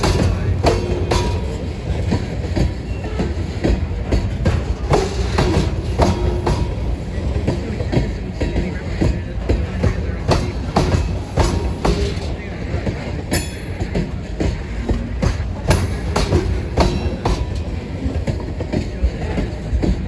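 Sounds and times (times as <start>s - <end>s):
freight train rumbling past: 0.0s - 20.0s
wheels clicking over rail joints: 0.0s - 20.0s.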